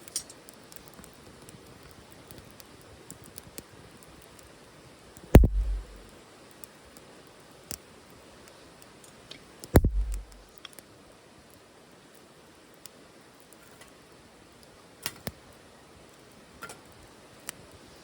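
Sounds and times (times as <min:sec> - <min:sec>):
wood fire crackling: 0:00.0 - 0:10.9
loud sharp knock: 0:05.4 - 0:06.1, 0:09.8 - 0:10.4
short low rumble: 0:05.4 - 0:06.1, 0:09.8 - 0:10.4.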